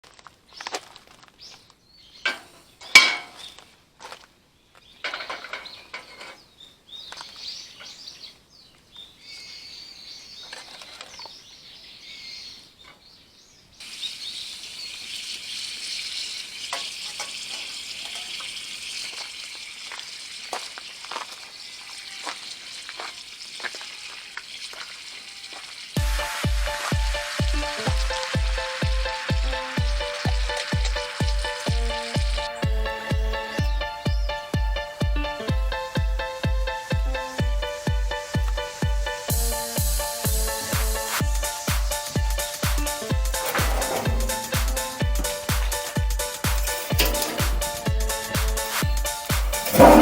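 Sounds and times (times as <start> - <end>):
welder arc sizzling: 13.8 - 32.5, 38.1 - 50.0.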